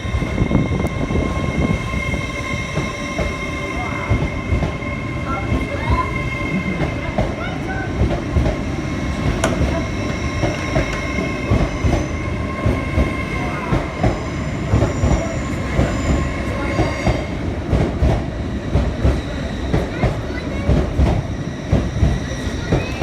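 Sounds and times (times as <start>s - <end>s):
train wheels clacking over rail joints: 8.0s - 13.1s.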